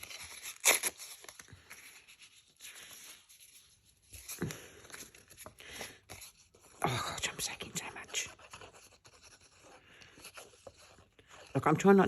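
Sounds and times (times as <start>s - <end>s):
paper ripping: 0.0s - 5.4s
paper rustling and scratching: 0.0s - 12.0s.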